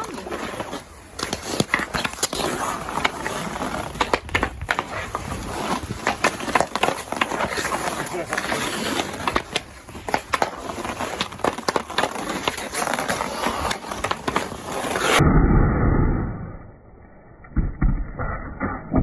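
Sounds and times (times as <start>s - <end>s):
skate blades scraping ice: 0.0s - 15.2s.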